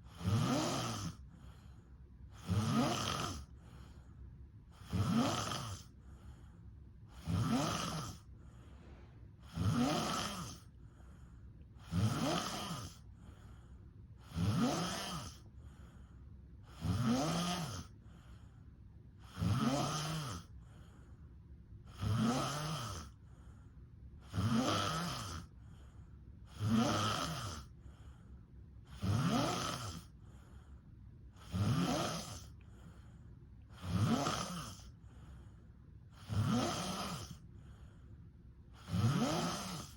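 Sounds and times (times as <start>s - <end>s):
quiet breathing: 0.0s - 39.9s
person snoring: 0.1s - 1.7s, 2.3s - 3.9s, 4.7s - 6.4s, 7.1s - 8.6s, 9.4s - 10.7s, 11.8s - 13.6s, 14.2s - 15.9s, 16.6s - 18.4s, 19.2s - 20.6s, 21.9s - 23.2s, 24.2s - 25.5s, 26.5s - 27.8s, 28.9s - 30.5s, 31.4s - 33.1s, 33.7s - 35.4s, 36.1s - 37.9s, 38.8s - 39.9s.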